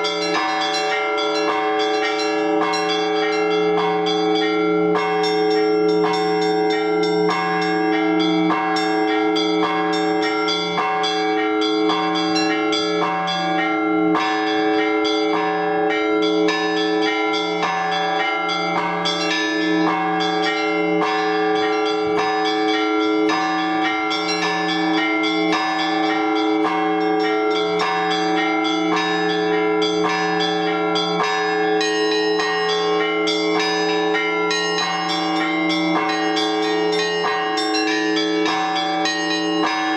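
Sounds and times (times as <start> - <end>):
church bells pealing: 0.0 - 39.9.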